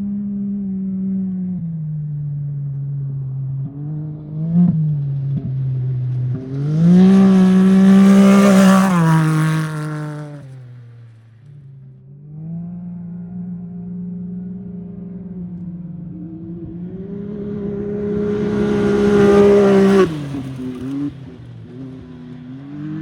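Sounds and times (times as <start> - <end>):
off-road vehicle engine passing: 0.0 - 23.0.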